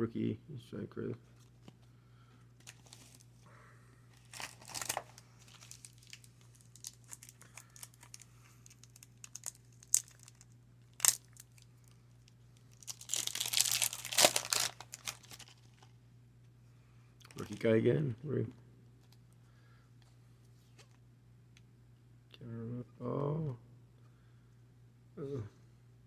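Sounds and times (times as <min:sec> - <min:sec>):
crinkling of card packs: 0:02.6 - 0:03.4, 0:04.1 - 0:15.9, 0:17.2 - 0:17.8.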